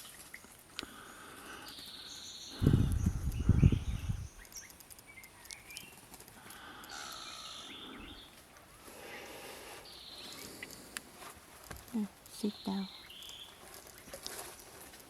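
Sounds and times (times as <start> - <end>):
small birds chirping: 0.0 - 15.0
breathing close to microphone: 0.8 - 4.3, 6.4 - 11.2.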